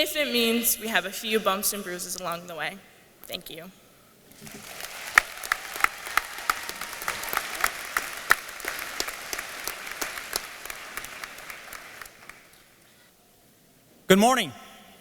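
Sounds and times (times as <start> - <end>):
audience applauding: 4.3 - 12.9.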